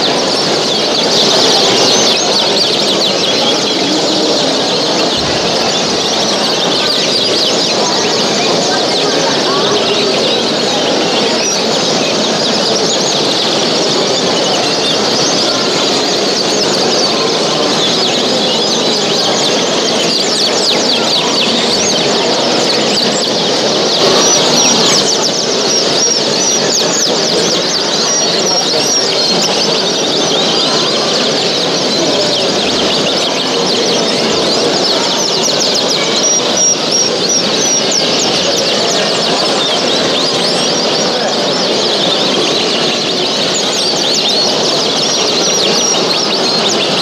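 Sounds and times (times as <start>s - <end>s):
caged birds chirping and singing: 0.0s - 47.0s.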